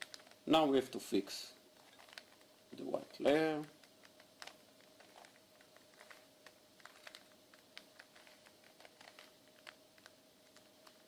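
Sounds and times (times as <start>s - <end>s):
puzzle cube clicking: 3.6s - 11.0s.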